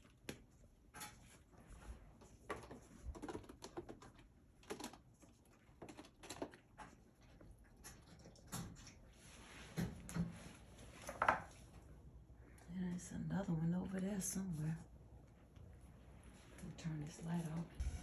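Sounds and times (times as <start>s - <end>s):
kitten claws scratching cardboard: 2.4s - 7.4s.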